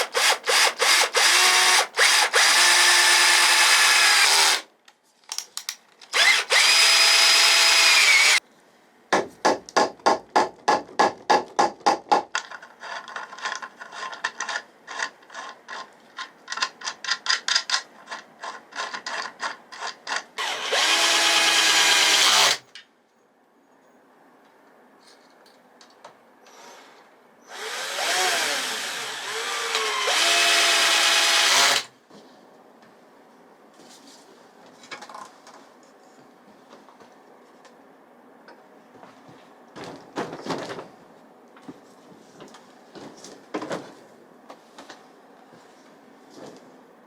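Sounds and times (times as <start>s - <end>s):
handheld power tool motor: 0.0s - 4.7s, 6.1s - 8.4s, 20.4s - 22.6s, 27.5s - 31.9s.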